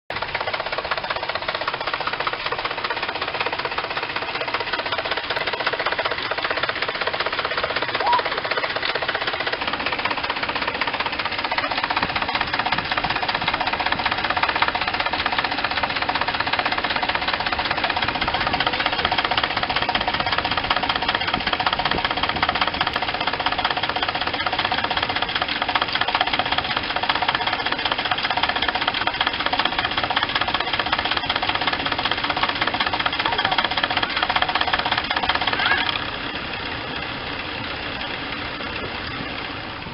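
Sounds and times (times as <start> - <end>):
car engine running: 0.1 - 39.9
rapid knocking from engine: 0.1 - 39.9.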